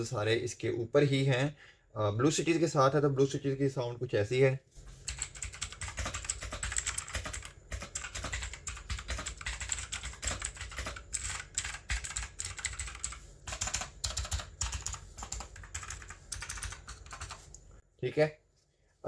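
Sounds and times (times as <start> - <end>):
clicky mechanical keyboard typing: 5.0 - 17.7.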